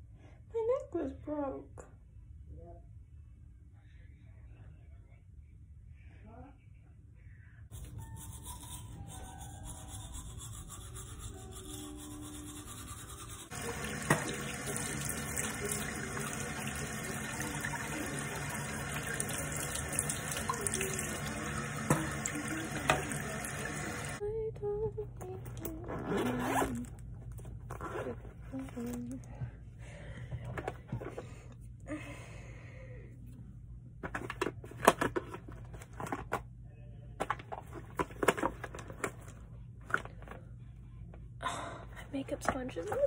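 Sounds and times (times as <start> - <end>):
running water hiss: 13.5 - 24.2.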